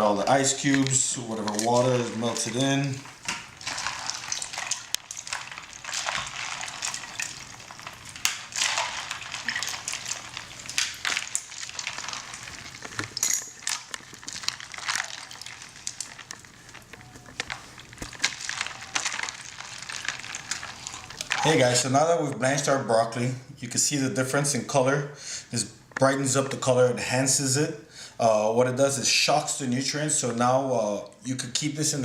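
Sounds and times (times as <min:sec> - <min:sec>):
ice clicking and rattling: 0:00.3 - 0:22.7
water splashing and draining: 0:01.6 - 0:16.5.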